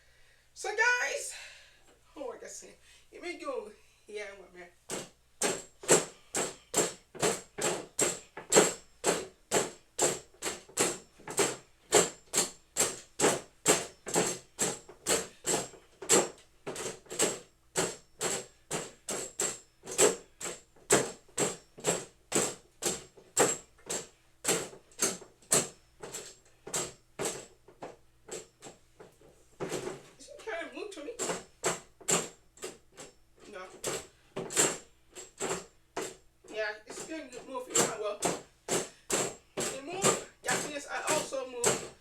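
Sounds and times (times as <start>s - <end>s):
punching bag being hit: 4.9s - 27.5s, 37.0s - 42.0s.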